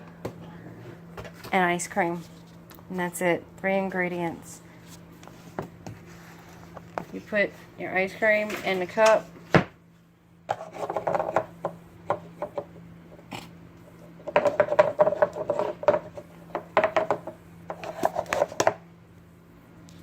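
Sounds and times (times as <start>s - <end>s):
scoop knocking and scraping cup: 10.5s - 11.5s, 14.2s - 16.2s.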